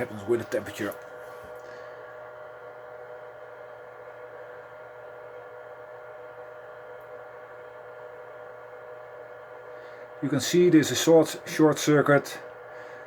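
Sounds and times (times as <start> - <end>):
electrical hum: 0.0 - 13.0.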